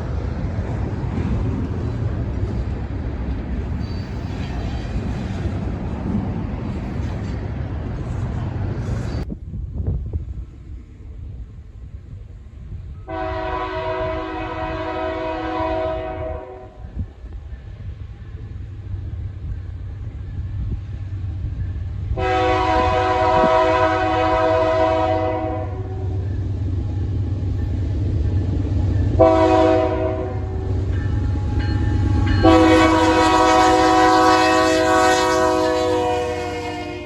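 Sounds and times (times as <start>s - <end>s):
passing train rumble: 0.0s - 37.0s
locomotive air horn: 13.0s - 16.9s, 22.2s - 26.2s, 29.2s - 30.8s, 32.0s - 37.0s.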